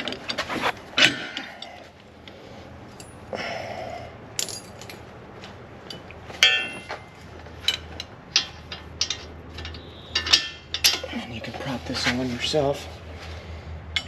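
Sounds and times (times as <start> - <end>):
low steady hum: 0.0 - 14.0
metal scrape: 0.2 - 1.2
metal clinks and knocks: 2.9 - 3.3, 4.4 - 5.1, 5.8 - 11.7
ringing metal clank: 5.9 - 11.2.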